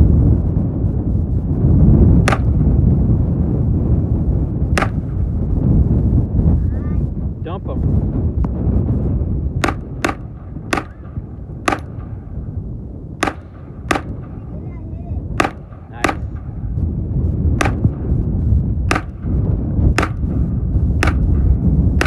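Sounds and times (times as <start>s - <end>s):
pistol shots: 2.2s - 2.7s, 4.8s - 5.2s, 9.6s - 12.4s, 13.2s - 14.5s, 15.3s - 16.8s, 17.6s - 18.1s, 18.9s - 19.4s, 20.0s - 20.4s, 21.0s - 21.5s.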